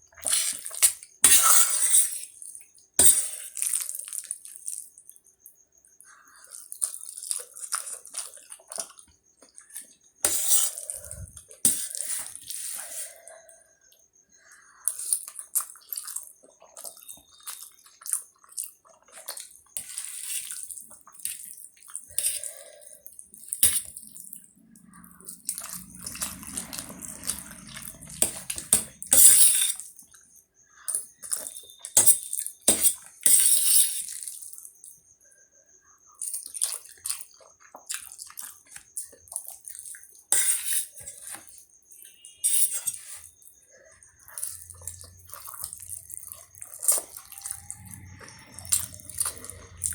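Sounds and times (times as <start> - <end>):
person slurping and chewing noodles: 6.4 - 13.4, 14.8 - 30.1, 36.2 - 49.9.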